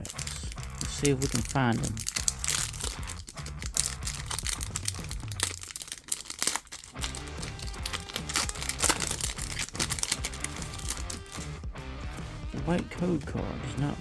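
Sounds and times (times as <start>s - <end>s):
foil wrapper crinkling: 0.0s - 11.6s
background music: 0.0s - 14.0s.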